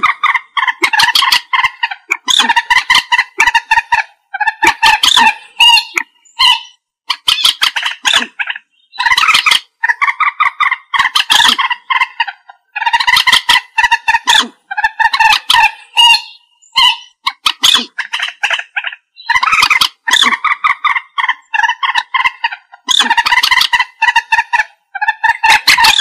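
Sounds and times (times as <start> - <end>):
moorhen clucking calls: 0.0 - 26.0.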